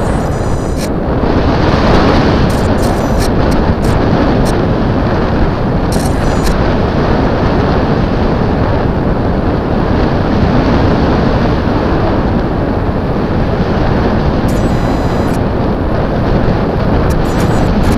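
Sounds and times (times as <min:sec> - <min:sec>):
short clicks: 0:00.0 - 0:00.9, 0:02.5 - 0:04.5, 0:05.9 - 0:06.6, 0:14.5 - 0:15.4, 0:17.1 - 0:17.9
wind buffeting microphone: 0:00.0 - 0:17.9.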